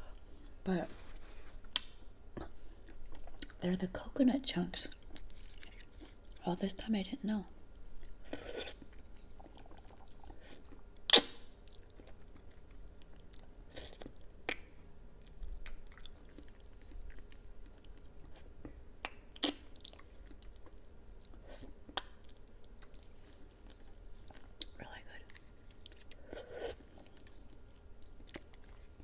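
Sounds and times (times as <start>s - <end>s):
chewing and wet mouth smacks: 8.0s - 26.2s, 26.8s - 29.0s.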